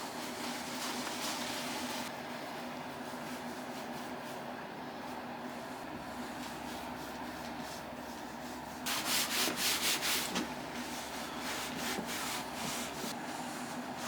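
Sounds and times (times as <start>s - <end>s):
sandpaper sanding wood: 6.8s - 13.2s.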